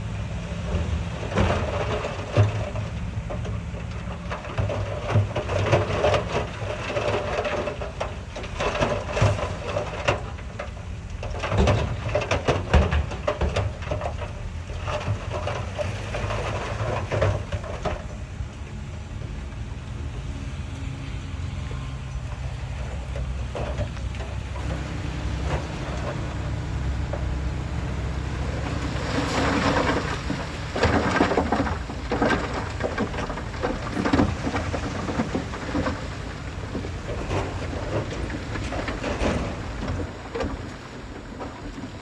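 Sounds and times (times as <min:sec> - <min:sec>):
heavy diesel engine: 0:00.0 - 0:42.0
stone and soil crunching: 0:23.9 - 0:38.5.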